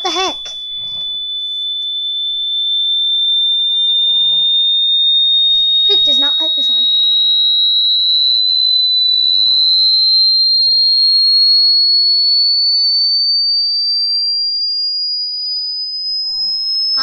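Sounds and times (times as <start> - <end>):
high steady whistle tone: 0.0 - 17.0.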